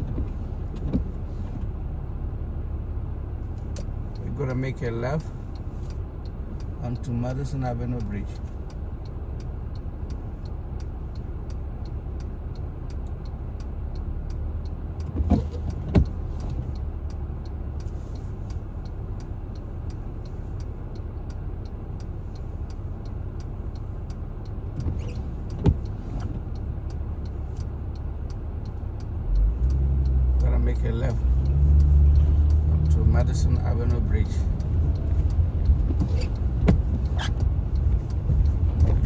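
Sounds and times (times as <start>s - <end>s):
car road and engine rumble: 0.0s - 39.0s
turn signal ticking: 0.0s - 39.0s.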